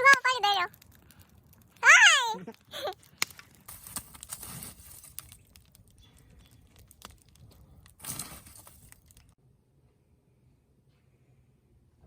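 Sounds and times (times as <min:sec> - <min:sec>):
rustling handling noise: 0:02.5 - 0:09.4.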